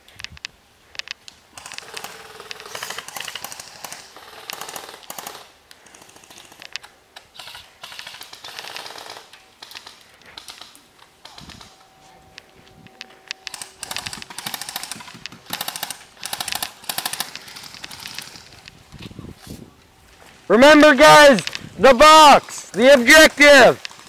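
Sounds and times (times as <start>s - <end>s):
airsoft guns firing: 1.5s - 6.7s, 7.3s - 11.8s, 13.4s - 18.7s, 20.6s - 24.0s.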